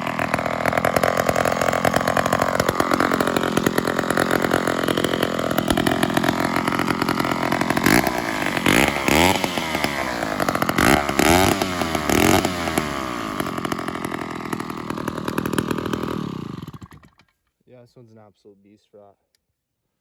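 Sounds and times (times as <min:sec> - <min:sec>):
chainsaw engine revving: 0:00.0 - 0:17.3.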